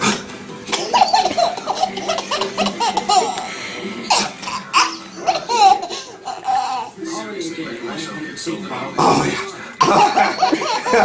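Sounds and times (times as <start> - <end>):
baby laughing: 0.7 - 7.0, 9.8 - 11.0.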